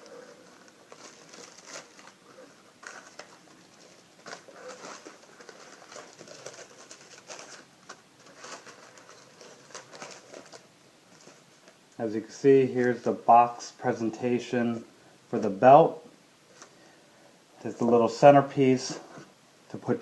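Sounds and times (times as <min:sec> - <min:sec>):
cardboard box rustling: 0:00.0 - 0:11.5.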